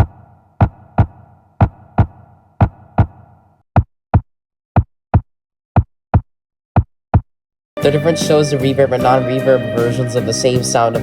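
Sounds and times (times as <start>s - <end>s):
heartbeat thumps: 0.0s - 7.3s.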